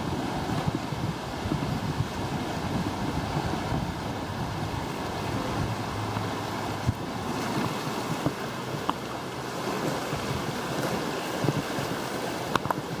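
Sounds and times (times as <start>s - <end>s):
waves splashing and lapping: 0.0s - 13.0s
wind buffeting microphone: 0.0s - 13.0s.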